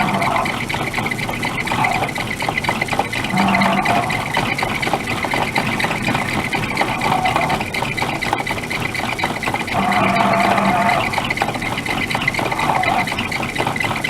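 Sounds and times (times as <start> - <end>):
fine rapid rattle: 0.0 - 14.0
metal lathe whirring: 0.0 - 14.0.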